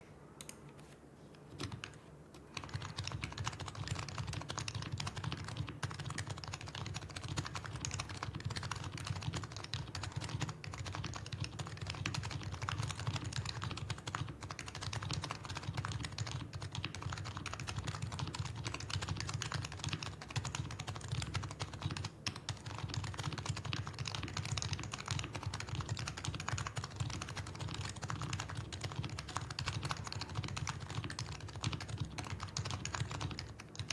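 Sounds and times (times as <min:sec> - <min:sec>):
rapid keyboard typing: 0:01.5 - 0:33.9.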